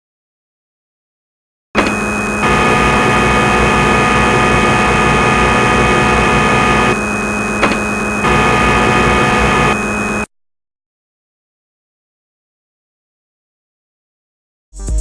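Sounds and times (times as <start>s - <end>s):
lathe machine hum and whine: 1.8s - 10.3s
single click: 7.6s - 7.9s.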